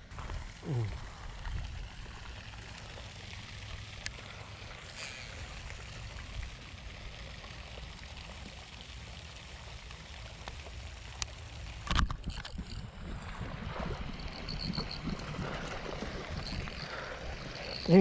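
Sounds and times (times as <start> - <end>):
wind on microphone: 12.0 - 18.0.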